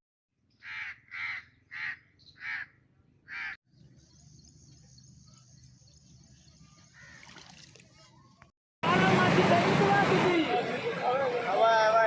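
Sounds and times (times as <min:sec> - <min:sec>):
bird harsh calls: 0:00.5 - 0:04.5, 0:05.2 - 0:07.6.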